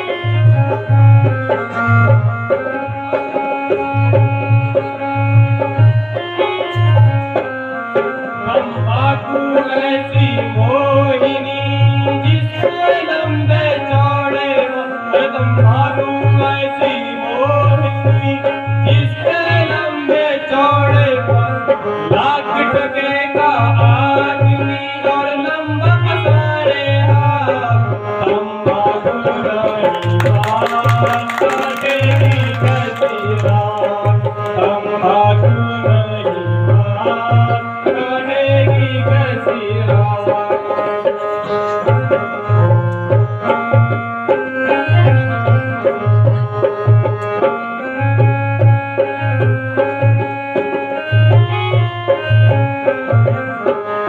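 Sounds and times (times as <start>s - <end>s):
hand drum beat: 29.3s - 34.9s.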